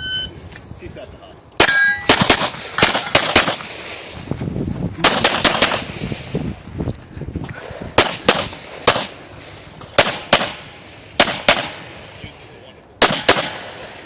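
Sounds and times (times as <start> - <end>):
pistol shots: 1.6 - 4.1, 5.0 - 6.3, 8.0 - 9.2, 9.9 - 12.1, 13.0 - 14.0.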